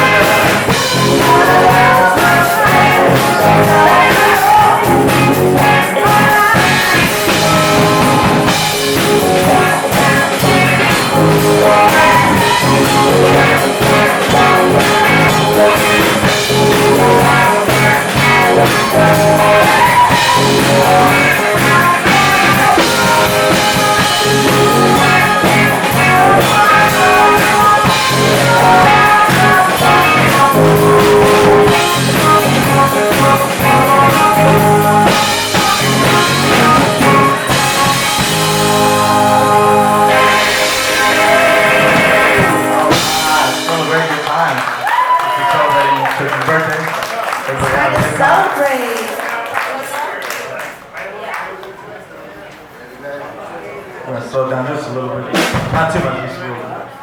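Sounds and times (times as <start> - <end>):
person singing: 0.0 - 44.2
drum kit: 0.0 - 46.0, 55.3 - 56.3
electric guitar: 0.0 - 46.2.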